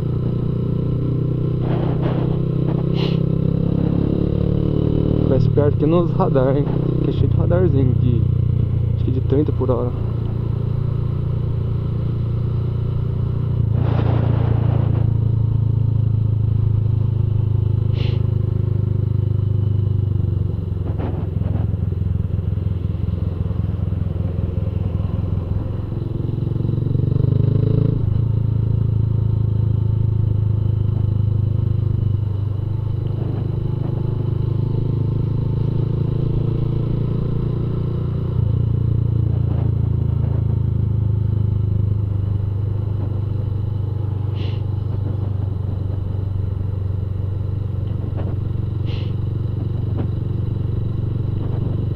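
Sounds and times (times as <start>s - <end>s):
motorcycle engine revving: 0.0s - 51.9s.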